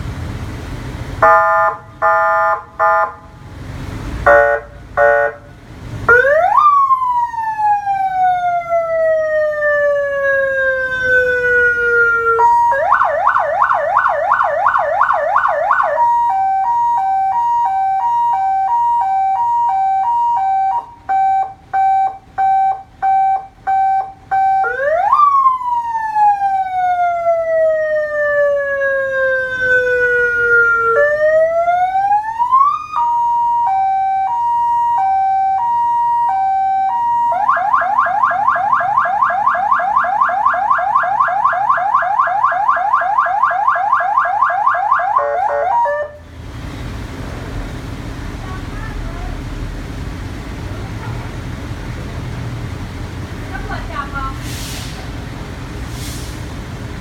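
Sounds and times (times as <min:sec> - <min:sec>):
electronic emergency siren: 0:01.2 - 0:03.2, 0:06.1 - 0:46.2.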